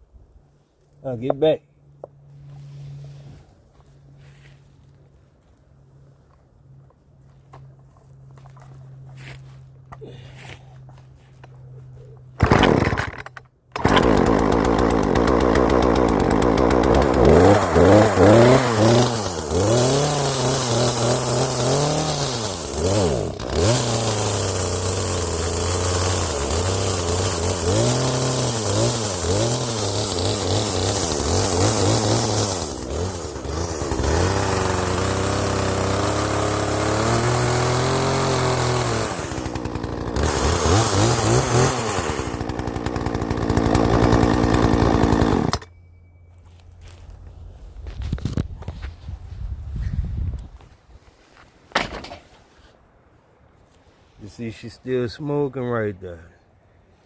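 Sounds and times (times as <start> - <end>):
chainsaw starting and revving: 12.3 - 45.7.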